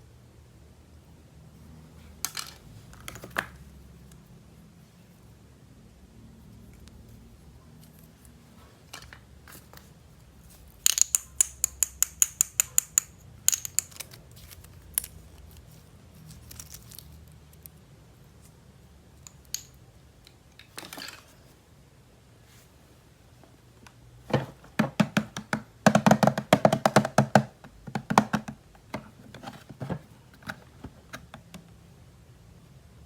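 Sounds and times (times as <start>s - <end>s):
plastic toys clicking: 10.8s - 15.5s.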